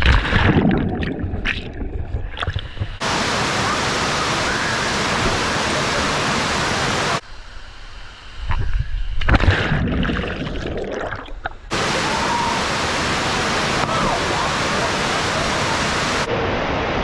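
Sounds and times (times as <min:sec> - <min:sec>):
waterfall rushing: 0:03.0 - 0:07.2, 0:11.7 - 0:17.0.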